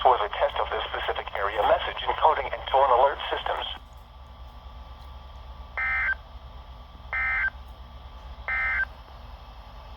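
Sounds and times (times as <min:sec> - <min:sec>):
faint radio hiss and hum: 0:00.0 - 0:06.1.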